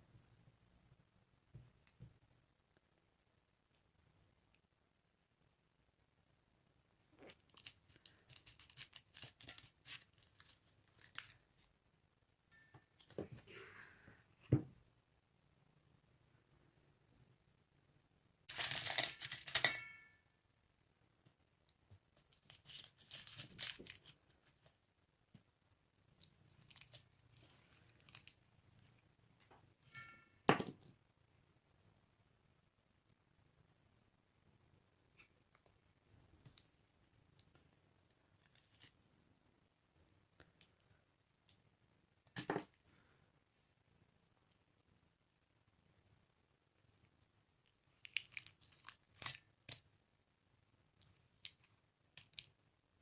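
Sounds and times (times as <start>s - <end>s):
candy wrapper crinkling: 7.1s - 11.7s, 18.5s - 19.9s, 22.2s - 24.8s, 26.2s - 29.0s, 38.4s - 39.0s, 47.6s - 49.9s, 51.0s - 52.6s.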